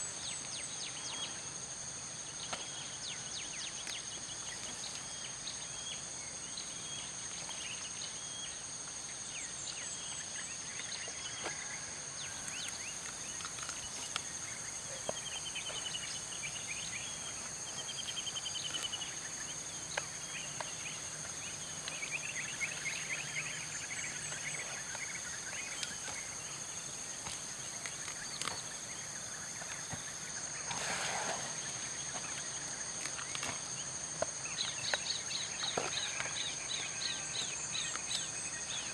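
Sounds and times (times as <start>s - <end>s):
birds trilling: 28.2s - 33.6s.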